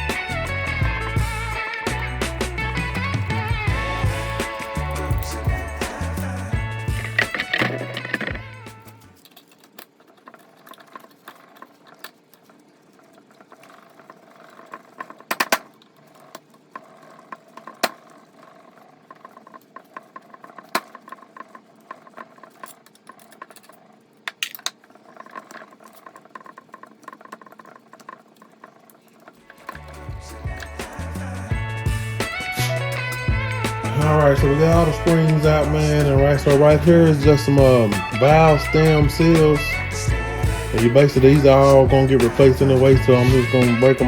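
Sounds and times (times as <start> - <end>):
small metal clicks and rattles: 6.2 - 31.3
metal parts clacking together: 7.0 - 30.0.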